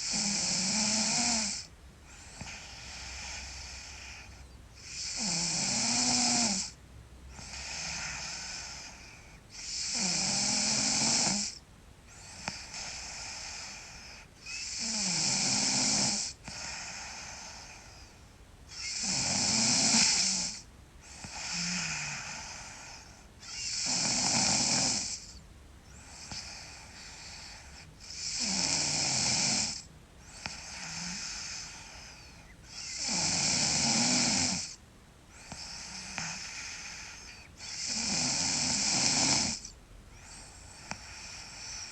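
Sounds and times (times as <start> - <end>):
girl snoring loudly: 0.0 - 1.7, 4.8 - 6.8, 7.4 - 9.0, 9.6 - 11.6, 12.3 - 17.7, 18.7 - 25.3, 26.0 - 34.8, 35.4 - 39.7
soft breath: 2.0 - 5.0, 7.3 - 9.7, 16.3 - 19.0, 20.6 - 23.7, 25.2 - 28.2, 29.8 - 33.0, 34.7 - 38.0, 39.6 - 41.9.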